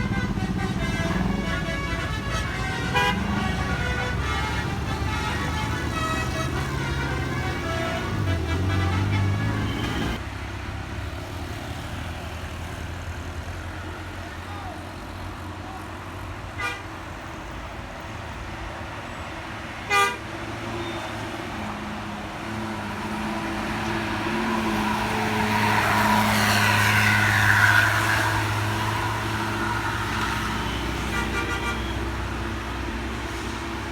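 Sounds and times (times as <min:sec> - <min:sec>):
short air-horn toots: 0:00.0 - 0:10.2, 0:30.5 - 0:32.2
heavy bus passing: 0:00.0 - 0:33.9.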